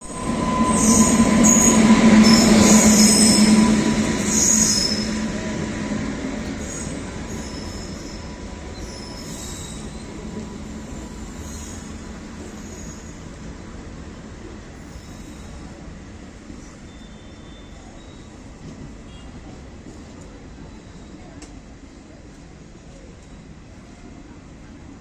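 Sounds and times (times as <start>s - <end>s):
train wheels squealing: 0.0s - 13.4s, 14.8s - 15.9s, 16.5s - 19.2s, 20.6s - 21.4s
train rumbling on rails: 0.0s - 25.0s.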